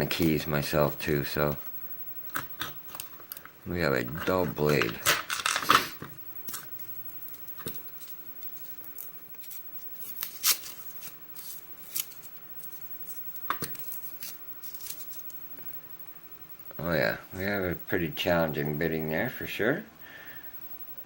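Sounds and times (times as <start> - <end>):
knife scraping tape: 9.0 - 12.3.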